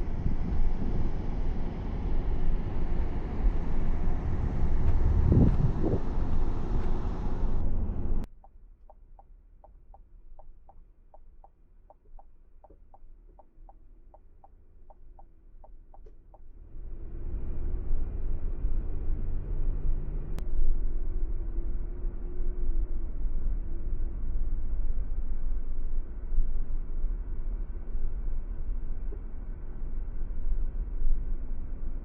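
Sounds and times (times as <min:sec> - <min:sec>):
car road noise: 0:00.0 - 0:08.3
turn-signal indicator ticking: 0:08.2 - 0:16.4.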